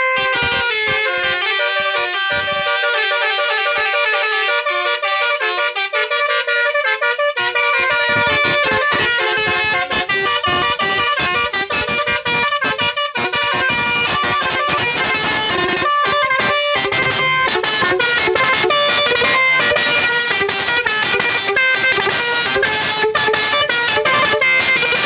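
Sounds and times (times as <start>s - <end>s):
musical bus horn melody: 0.0s - 25.0s.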